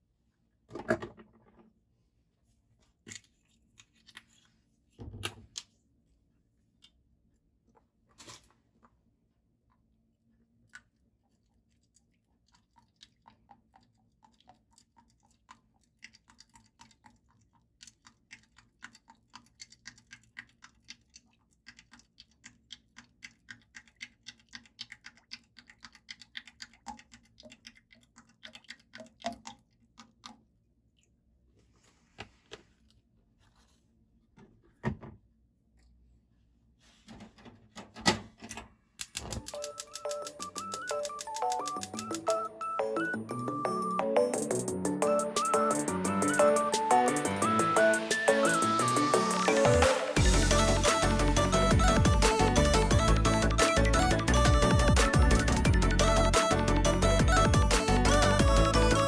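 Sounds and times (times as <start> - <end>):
food crunching clicks: 39.0 - 42.9.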